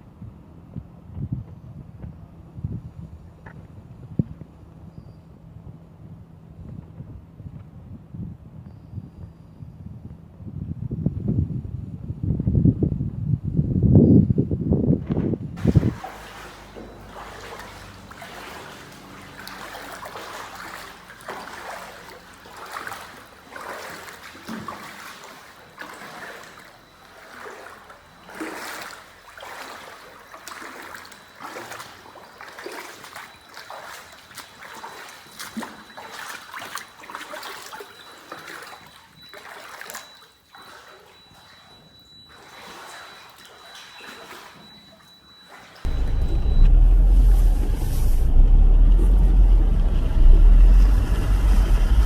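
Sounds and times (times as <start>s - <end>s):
water splashing and trickling: 15.6s - 52.0s.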